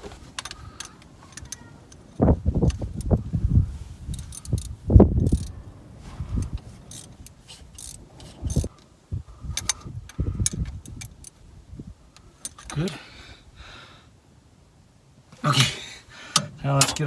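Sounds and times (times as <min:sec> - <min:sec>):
metal tools clinking: 0:06.4 - 0:08.7, 0:15.4 - 0:17.0.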